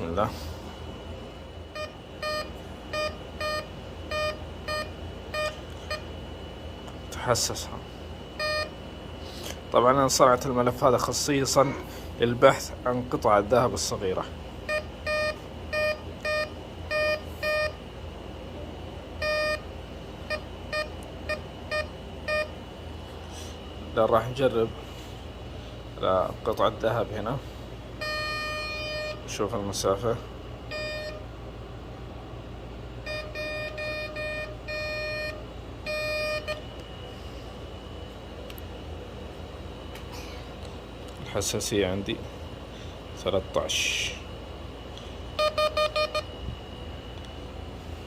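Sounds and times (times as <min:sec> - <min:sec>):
low hum: 0:00.0 - 0:41.2
metal detector beeps: 0:01.8 - 0:06.0, 0:14.7 - 0:17.8, 0:28.0 - 0:29.2, 0:30.7 - 0:31.2, 0:33.0 - 0:36.6, 0:45.4 - 0:46.3.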